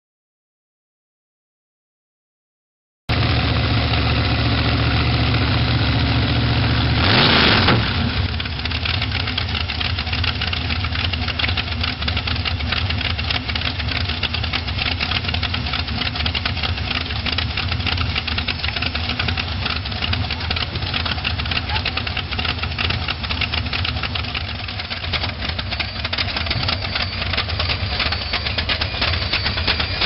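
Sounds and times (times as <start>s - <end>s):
engine idling and revving: 3.1s - 30.0s
fast steady ticking: 8.3s - 30.0s.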